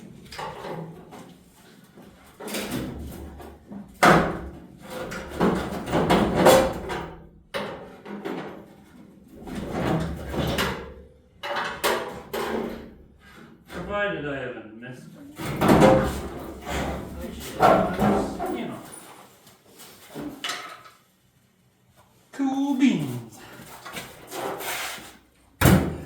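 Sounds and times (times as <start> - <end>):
steel fender scraping and clunking: 15.4 - 18.5.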